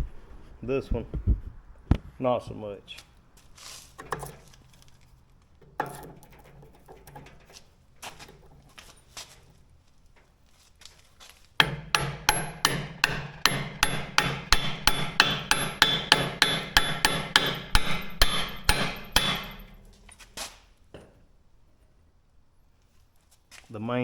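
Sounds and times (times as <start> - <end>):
hammer striking steel: 11.6 - 20.0.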